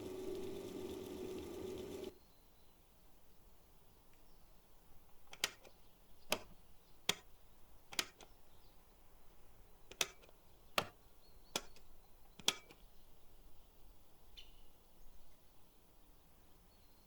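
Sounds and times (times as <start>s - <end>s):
faint hiss: 0.0s - 4.9s
tape recorder control clicks: 5.2s - 7.3s, 7.9s - 8.4s, 9.9s - 12.8s.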